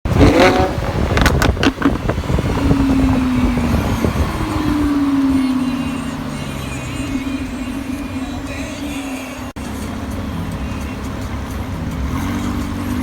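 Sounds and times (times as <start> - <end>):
exhaust pops and crackles: 0.0 - 5.3
car engine droning: 0.0 - 13.0.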